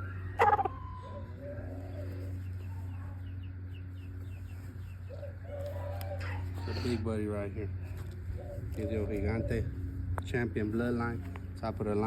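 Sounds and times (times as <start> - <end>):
steady low hum: 0.0 - 12.0
chicken clucking: 0.4 - 7.0.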